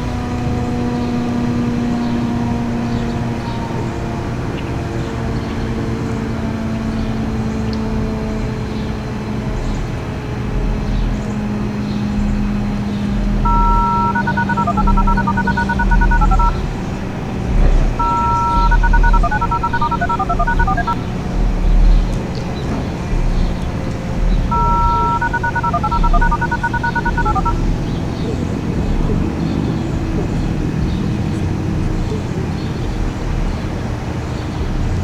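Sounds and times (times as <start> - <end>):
electronic control tones: 13.5 - 16.6, 18.0 - 21.0, 24.5 - 27.6.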